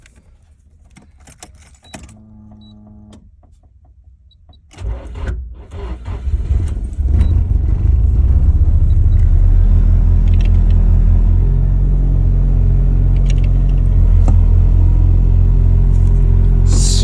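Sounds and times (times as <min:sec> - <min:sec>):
car engine cranking and running: 0:01.0 - 0:17.0
ignition clicks: 0:10.2 - 0:10.8, 0:13.1 - 0:14.4
brief electric hum: 0:16.6 - 0:17.0.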